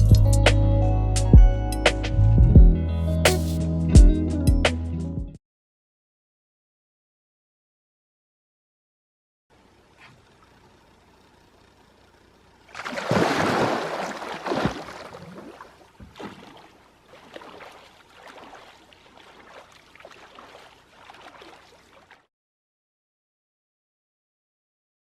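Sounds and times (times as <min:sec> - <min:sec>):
water splashing: 0:12.7 - 0:22.3.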